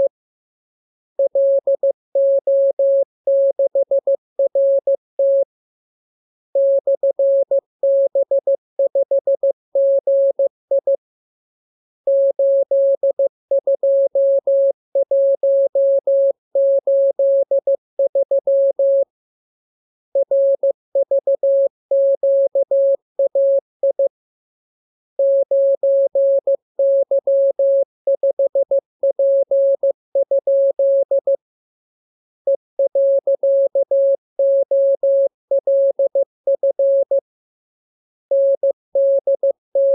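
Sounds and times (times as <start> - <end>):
morse code tone: 32.5 - 37.2, 38.3 - 39.9.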